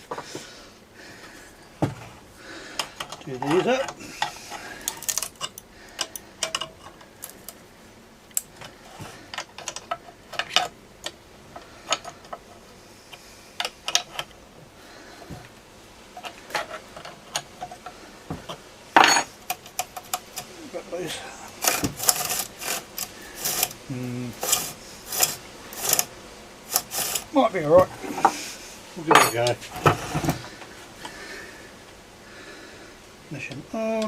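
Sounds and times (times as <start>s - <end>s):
spanner clicking on metal: 4.9s - 6.8s.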